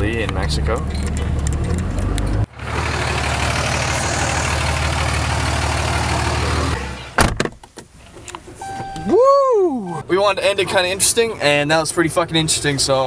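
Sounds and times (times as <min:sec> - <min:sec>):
car engine running: 0:00.0 - 0:07.4.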